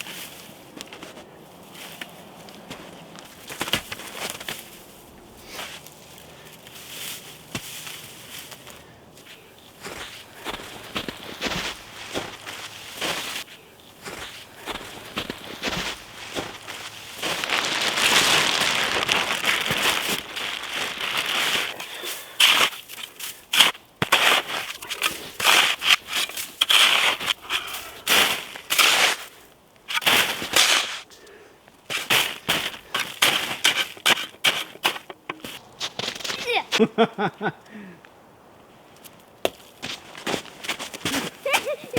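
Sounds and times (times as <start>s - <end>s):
branches snapping and crunching: 1.9s - 31.0s.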